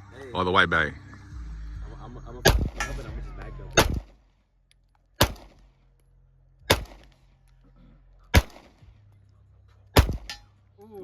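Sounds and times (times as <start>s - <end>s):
pistol shots with echo: 2.4s - 3.1s, 3.7s - 4.2s, 5.2s - 5.7s, 6.7s - 7.2s, 8.3s - 8.9s, 10.0s - 10.5s.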